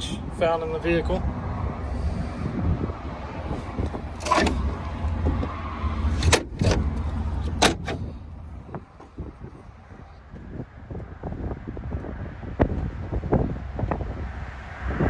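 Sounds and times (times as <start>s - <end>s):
low wind rumble: 0.0s - 15.0s
clacks and knocks of vehicle hardware: 3.6s - 11.1s.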